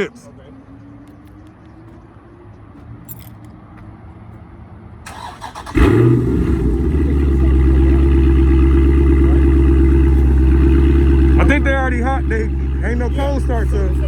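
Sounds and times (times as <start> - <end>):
car starter cranking: 5.1 - 12.8
car engine idling: 5.1 - 14.0.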